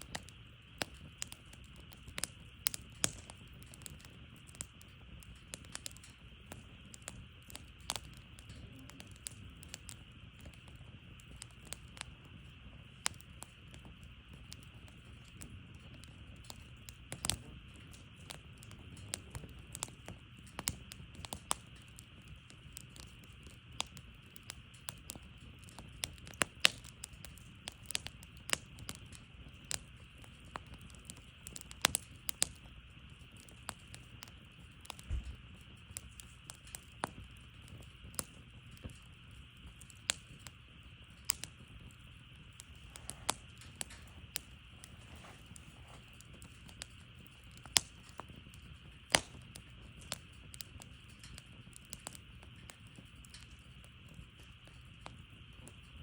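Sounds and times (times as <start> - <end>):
faint steady hiss: 0.0 - 56.0
firewood crackling and popping: 0.0 - 56.0.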